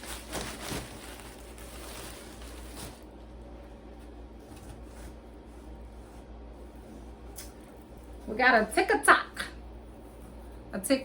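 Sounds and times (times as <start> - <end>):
packaging and clothing rustling: 0.0 - 3.3
low steady hum: 0.0 - 11.0.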